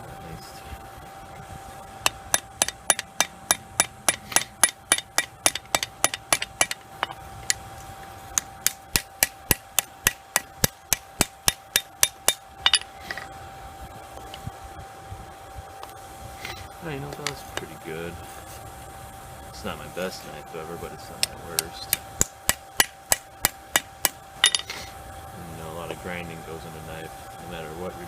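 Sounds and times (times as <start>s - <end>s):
faint steady tone: 0.0s - 28.0s
hammer striking steel: 2.0s - 7.6s, 8.4s - 13.3s, 21.2s - 24.9s.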